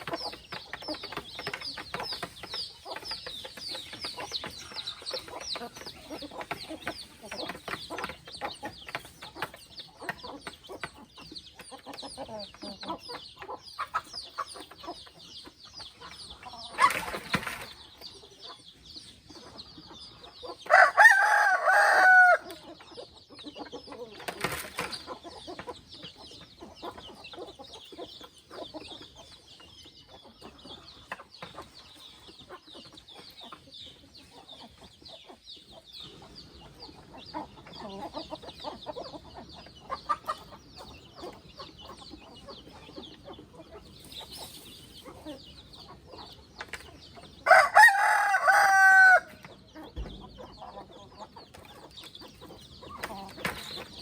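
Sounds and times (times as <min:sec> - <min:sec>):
chickens clucking: 0:00.0 - 0:54.0
rooster crowing: 0:20.7 - 0:22.5, 0:47.5 - 0:49.3.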